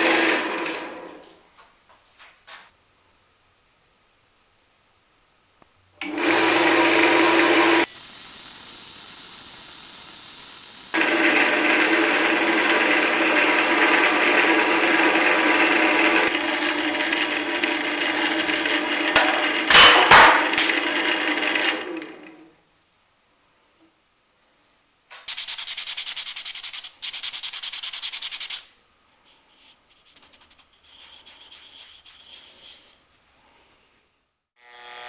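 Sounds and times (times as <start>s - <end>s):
workshop machine humming: 6.0s - 7.9s, 11.0s - 22.5s
workpiece rasping: 29.6s - 33.0s.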